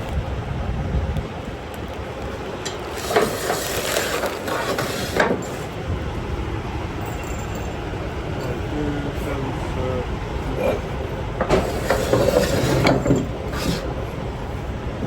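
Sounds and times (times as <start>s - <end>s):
metal clanking and rattling: 2.6s - 5.8s, 10.5s - 14.1s.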